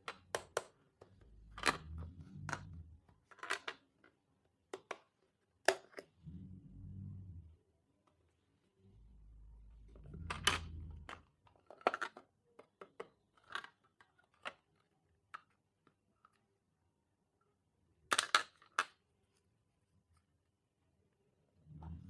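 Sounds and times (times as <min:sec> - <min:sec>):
low rumble: 0:01.2 - 0:03.0, 0:06.2 - 0:07.6, 0:08.8 - 0:11.2.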